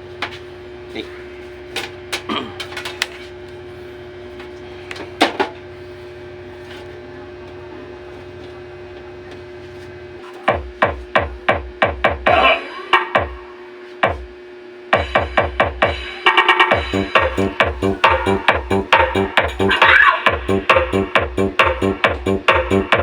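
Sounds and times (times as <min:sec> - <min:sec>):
music with heavy bass kicks: 0:15.0 - 0:16.0, 0:16.7 - 0:23.0
amplifier hum and buzz: 0:16.8 - 0:23.0.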